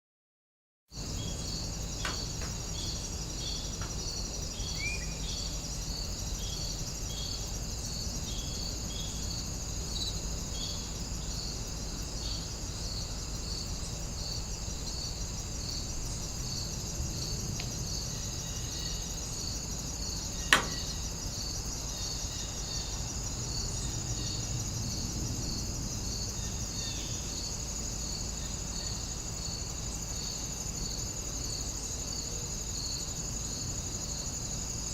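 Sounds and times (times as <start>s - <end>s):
crickets and insects chirping: 0.9s - 34.9s
sharp click: 20.5s - 20.9s.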